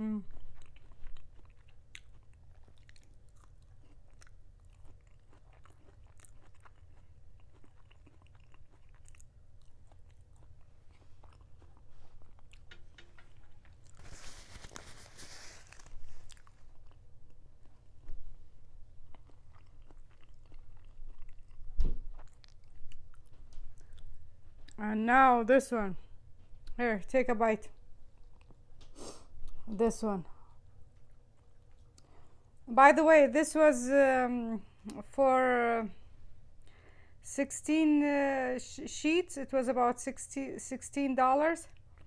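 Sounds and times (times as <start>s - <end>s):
chewing and biting food: 0.2s - 14.1s, 15.7s - 24.8s.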